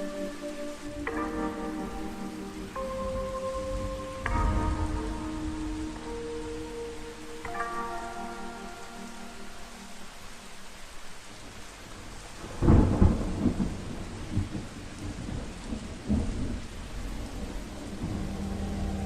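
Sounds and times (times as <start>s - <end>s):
steady rain falling: 0.0s - 19.0s
thunder clap and rumbling: 12.4s - 19.0s.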